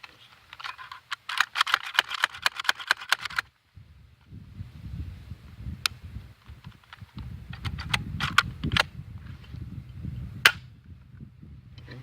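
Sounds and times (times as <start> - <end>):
metallic clicks of pistol: 0.5 - 3.5.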